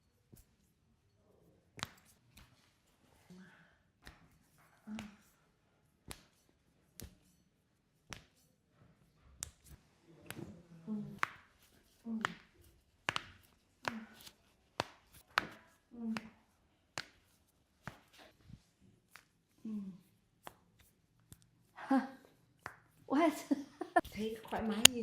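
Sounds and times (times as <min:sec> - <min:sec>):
hands slapping on body: 0:01.8 - 0:02.7, 0:04.0 - 0:05.3, 0:06.0 - 0:07.3, 0:08.0 - 0:08.4, 0:09.4 - 0:18.4, 0:19.0 - 0:19.4, 0:20.4 - 0:21.5, 0:22.6 - 0:23.0.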